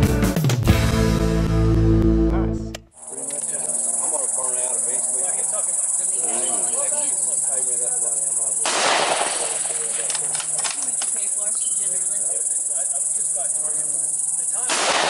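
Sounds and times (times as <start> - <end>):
music: 0.0 - 7.0
high-pitched insect drone: 2.9 - 15.0
faint voices: 3.0 - 14.8.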